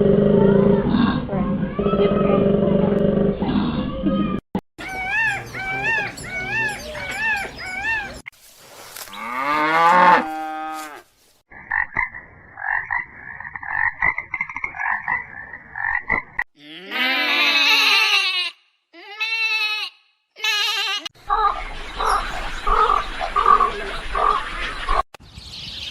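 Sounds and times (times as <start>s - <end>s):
drawn-out falling animal call: 4.8s - 8.3s, 9.0s - 11.0s.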